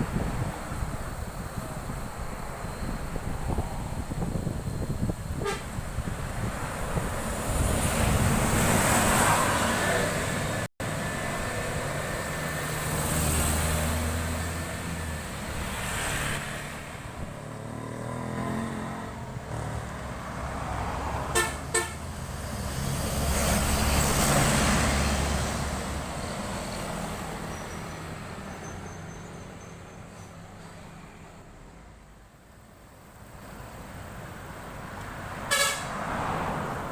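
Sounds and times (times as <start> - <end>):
highway traffic passing: 0.0 - 36.9
short horn toots: 5.4 - 5.8, 35.5 - 35.9.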